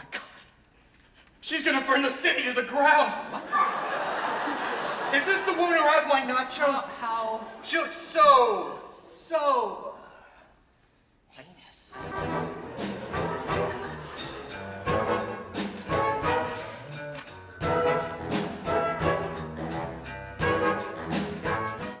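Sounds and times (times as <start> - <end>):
orchestral music with brass: 11.9 - 22.0.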